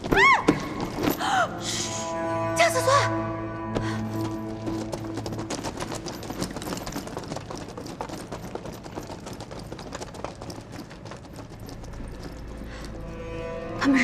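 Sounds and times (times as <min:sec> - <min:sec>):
group footsteps clattering: 0:00.0 - 0:01.4, 0:03.8 - 0:13.2.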